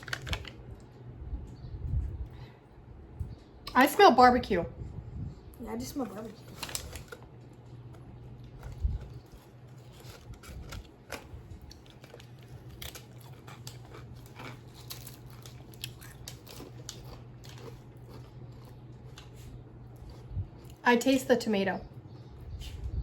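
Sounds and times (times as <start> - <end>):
chewing crunchy crisps: 0.0 - 1.0, 6.0 - 21.0
steady low hum: 0.0 - 23.0.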